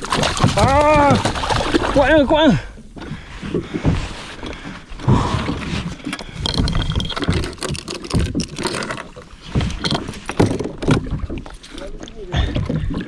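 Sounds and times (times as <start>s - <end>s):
clicks of gear handled: 6.1s - 11.9s.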